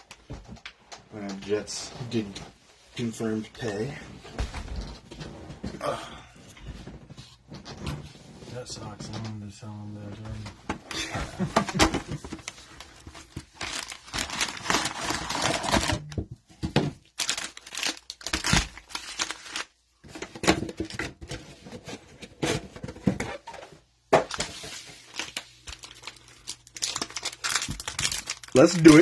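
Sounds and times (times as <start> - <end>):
cellophane wrappers crinkling and tearing: 11.5 - 16.2, 17.0 - 19.9, 24.3 - 29.0.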